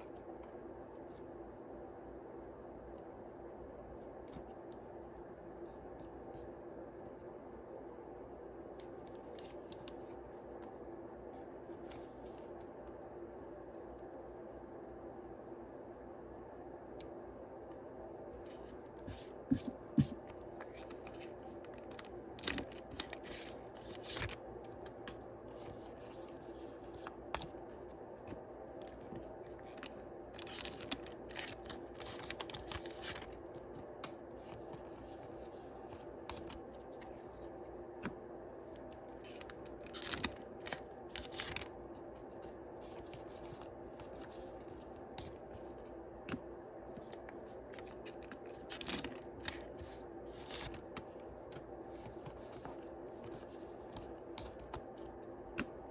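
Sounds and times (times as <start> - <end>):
cards being handled: 18.5 - 38.2
foil wrappers tearing and crinkling: 29.7 - 33.3.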